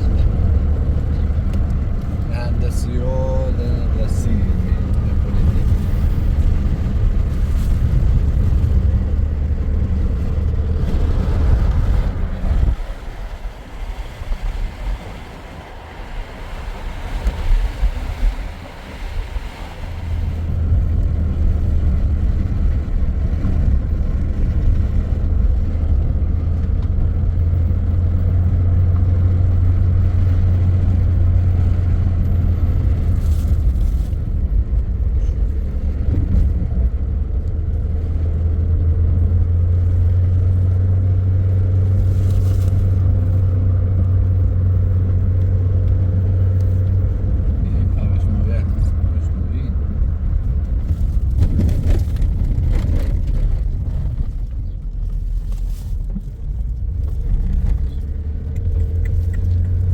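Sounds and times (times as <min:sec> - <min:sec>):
vehicle engine hum: 0:00.0 - 0:59.9.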